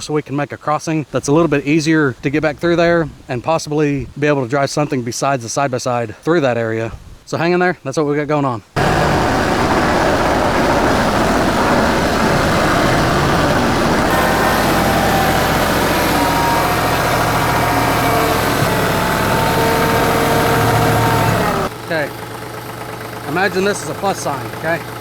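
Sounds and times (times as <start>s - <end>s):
steady whining tones: 8.8s - 25.0s
tractor diesel engine running: 8.8s - 25.0s.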